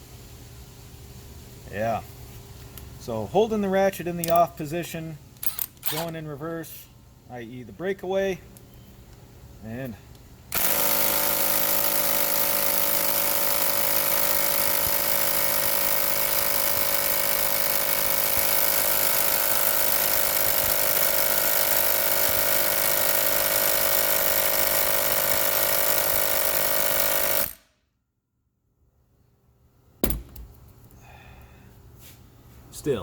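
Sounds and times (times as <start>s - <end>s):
impact wrench hammering: 10.5s - 27.6s, 30.0s - 30.6s.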